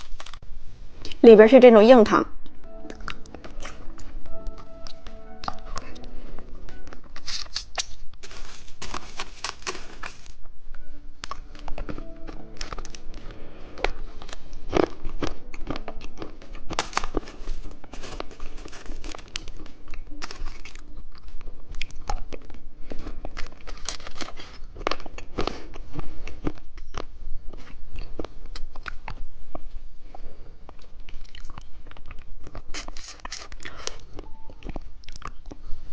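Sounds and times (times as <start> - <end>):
faint background music: 0.0 - 35.9
candy wrapper crinkling: 6.7 - 10.4, 11.2 - 29.1, 31.2 - 34.1
hard candy crunching: 6.7 - 10.4, 11.2 - 29.2, 30.7 - 35.6.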